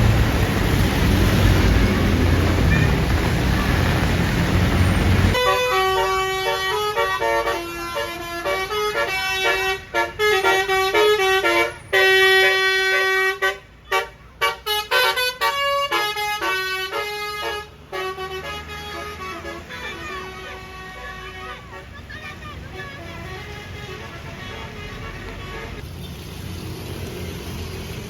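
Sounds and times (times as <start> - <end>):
rushing noise: 0.0 - 6.6
bus air horn melody: 5.3 - 22.0, 22.7 - 25.8.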